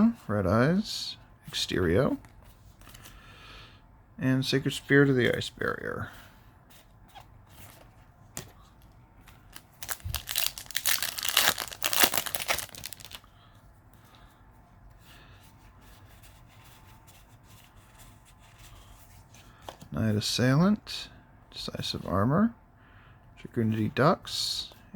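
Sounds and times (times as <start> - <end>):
foil wrapper tearing and crinkling: 9.6 - 13.2.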